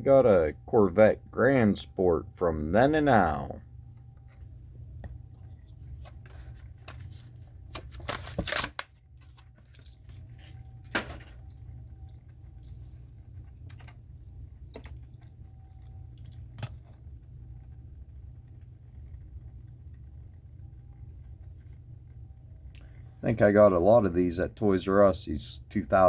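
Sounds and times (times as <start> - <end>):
steady low hum: 0.0 - 26.0
plastic and card crinkling: 4.2 - 11.6
packaging ripping: 6.5 - 9.0.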